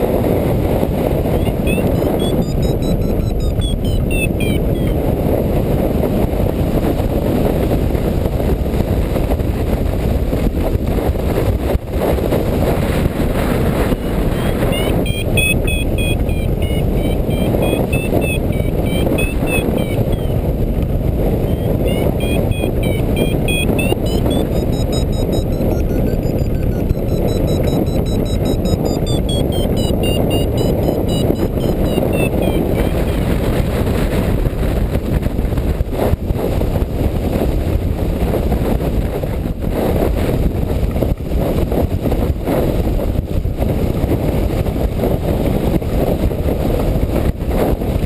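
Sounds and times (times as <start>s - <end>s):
wind buffeting microphone: 0.0s - 48.0s
variometer beeping: 1.1s - 5.1s, 13.6s - 33.6s.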